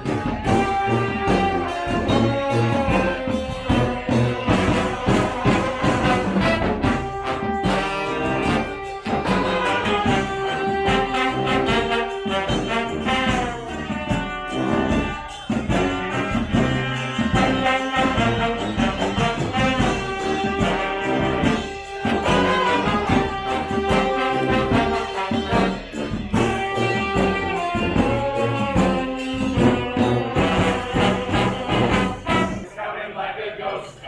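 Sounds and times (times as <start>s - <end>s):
brass band playing: 0.0s - 32.9s.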